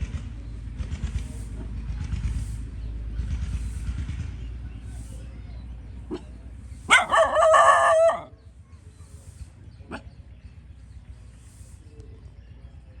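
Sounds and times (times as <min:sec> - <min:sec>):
farm animal call: 0:06.0 - 0:10.2.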